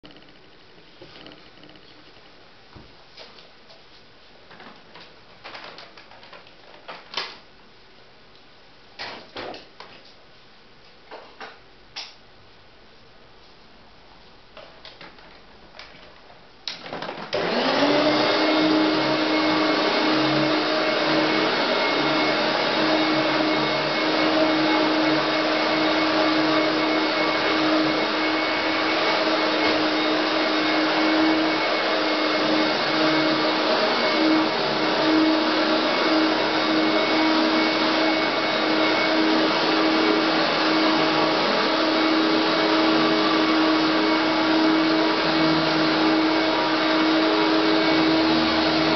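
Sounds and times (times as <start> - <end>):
vacuum cleaner motor whining: 16.9 - 48.9.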